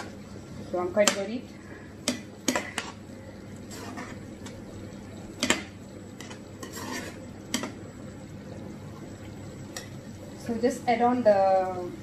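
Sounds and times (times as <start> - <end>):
spoon scraping pan: 2.0 - 7.9.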